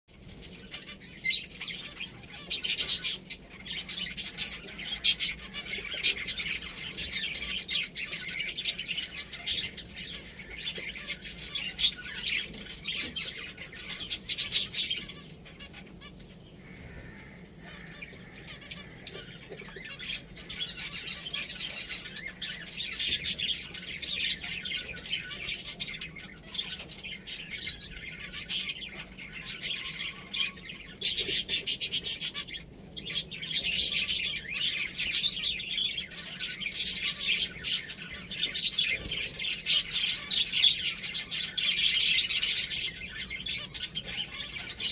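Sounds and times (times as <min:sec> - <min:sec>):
finches chirping: 0:00.3 - 0:44.9.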